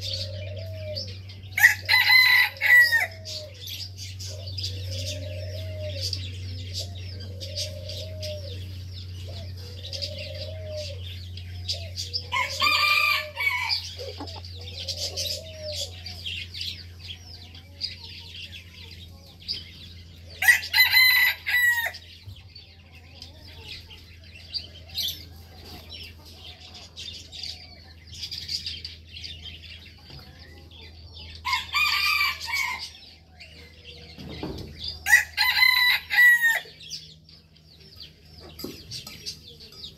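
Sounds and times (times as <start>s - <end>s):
small birds chirping: 0.0s - 39.9s
rooster crowing: 1.6s - 3.5s, 12.3s - 14.0s, 20.4s - 22.0s, 31.4s - 32.9s, 35.0s - 36.8s.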